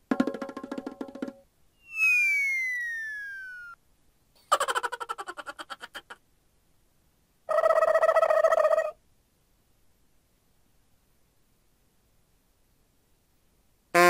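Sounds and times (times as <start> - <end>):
falling whistle glide: 1.8 - 3.8.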